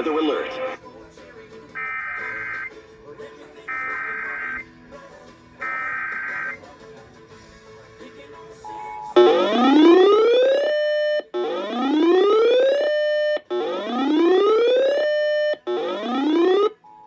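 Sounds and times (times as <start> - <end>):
rising buzzy siren tone: 9.2 - 16.8.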